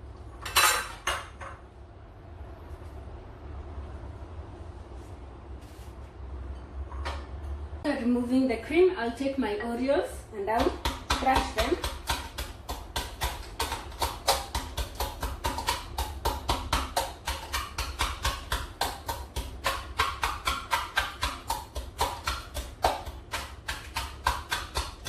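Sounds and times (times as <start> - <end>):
cookies pounded in a bowl: 10.5 - 25.0.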